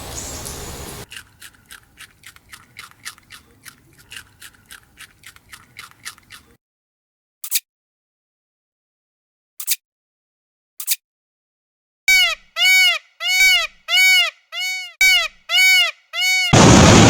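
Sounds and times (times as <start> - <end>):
loud bird calls: 0.0 - 5.0, 12.1 - 17.0.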